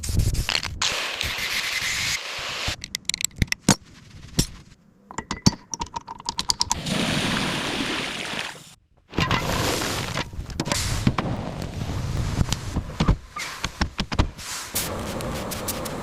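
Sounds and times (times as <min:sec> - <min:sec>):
metallic clinks and taps: 0:05.1 - 0:06.8.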